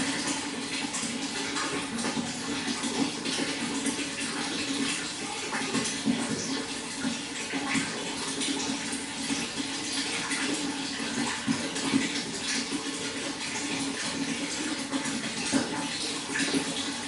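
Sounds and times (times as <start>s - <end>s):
water running and splashing: 0.0s - 17.0s.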